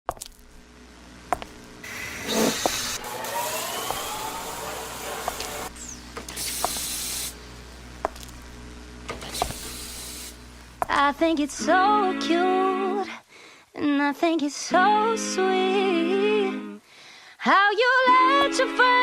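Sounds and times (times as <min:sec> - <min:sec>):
faint rising whine: 0:01.8 - 0:06.1
hissing noise bursts: 0:01.8 - 0:07.4, 0:09.2 - 0:10.4.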